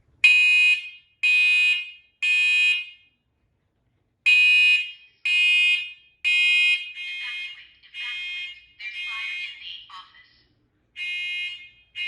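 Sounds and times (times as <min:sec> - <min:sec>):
smoke alarm beeping: 0:00.2 - 0:03.2, 0:04.3 - 0:09.6, 0:11.0 - 0:12.0.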